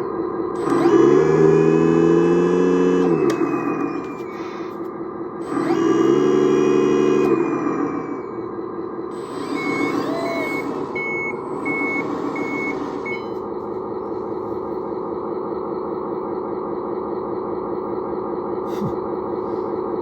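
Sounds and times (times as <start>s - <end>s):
reversing alarm beeps: 0.0s - 14.6s
diesel engine sound from speaker: 0.0s - 20.0s.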